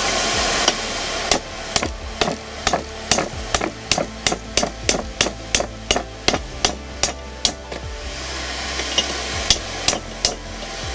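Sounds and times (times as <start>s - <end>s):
hammer striking steel on anvil: 0.5s - 7.9s.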